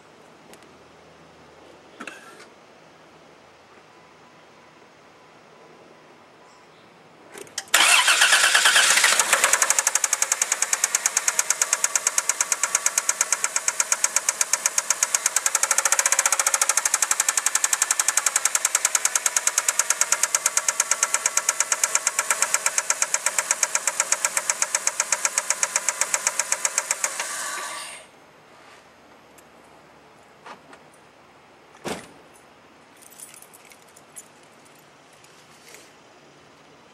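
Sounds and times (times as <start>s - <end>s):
fast sharp mechanical knocks: 8.6s - 27.5s
thud: 31.8s - 32.2s.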